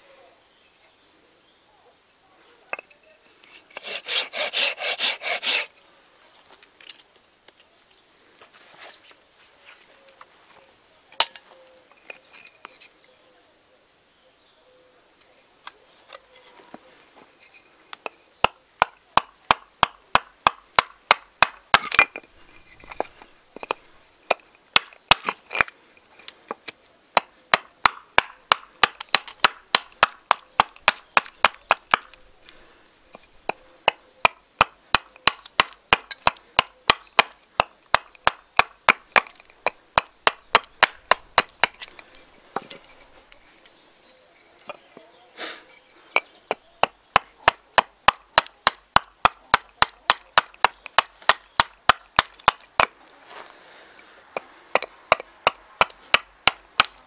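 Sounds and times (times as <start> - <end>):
axe chopping wood: 18.4 - 25.7, 27.2 - 32.2, 33.5 - 42.0, 46.2 - 53.0, 54.4 - 57.0.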